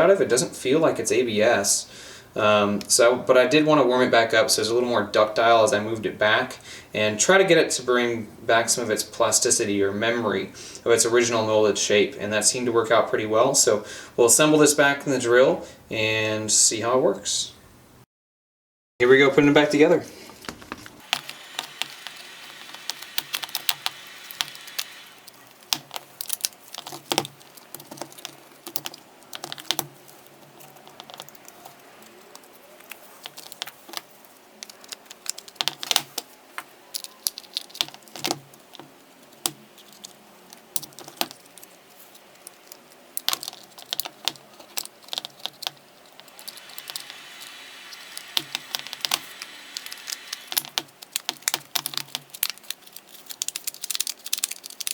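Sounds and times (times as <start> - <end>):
plastic and metal parts clicking: 20.3 - 54.9.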